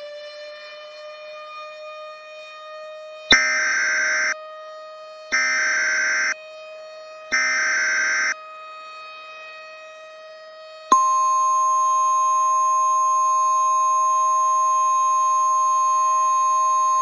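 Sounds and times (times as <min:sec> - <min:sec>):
faint steady tone: 0:03.3 - 0:04.4, 0:05.4 - 0:06.4, 0:07.3 - 0:08.4, 0:10.9 - 0:17.0
shrill digital data tones: 0:03.3 - 0:04.4, 0:05.4 - 0:06.4, 0:07.4 - 0:08.4, 0:10.9 - 0:17.0.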